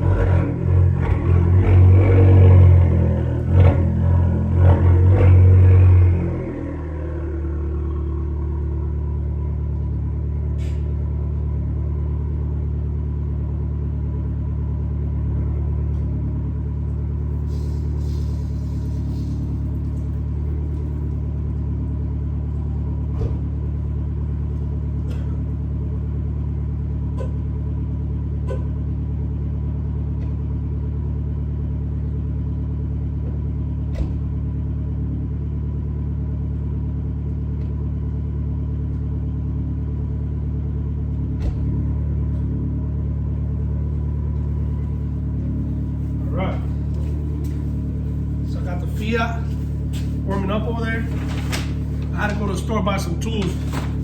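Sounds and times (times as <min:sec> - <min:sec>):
car engine idling: 0:00.0 - 0:54.0.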